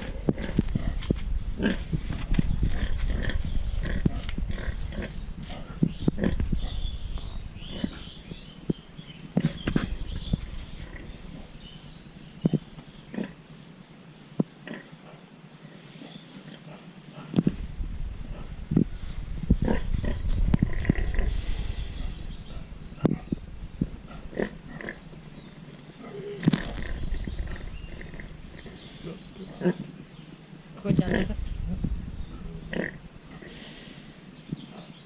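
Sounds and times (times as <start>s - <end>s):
pigs grunting: 0.0s - 1.0s, 1.6s - 1.9s, 2.6s - 6.8s, 14.6s - 15.2s, 19.6s - 23.4s, 24.0s - 25.2s, 25.9s - 29.9s, 32.3s - 34.0s.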